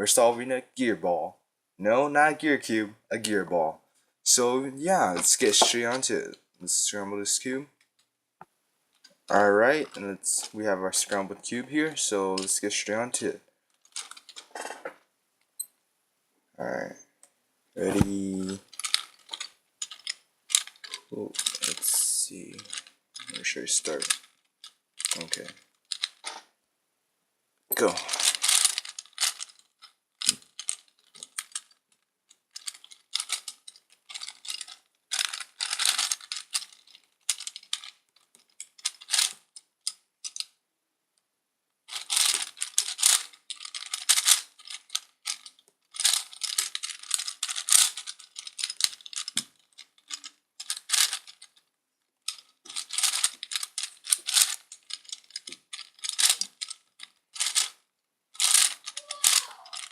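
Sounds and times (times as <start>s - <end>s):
plastic puzzle gears clicking: 13.8s - 14.5s, 18.3s - 26.4s, 27.8s - 31.8s, 32.4s - 40.6s, 41.9s - 51.6s, 52.2s - 57.8s, 58.4s - 59.9s.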